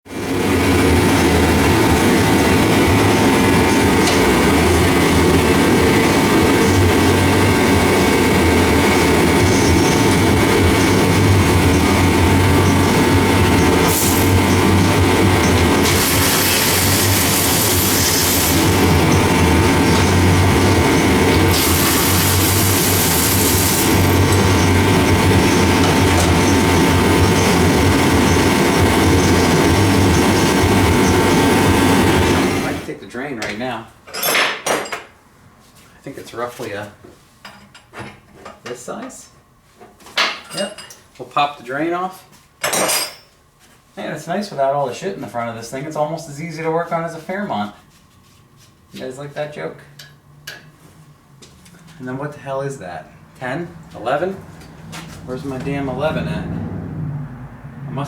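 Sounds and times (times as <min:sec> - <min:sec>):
mechanical rumble with low hum: 0:00.2 - 0:33.0, 0:49.7 - 0:58.0.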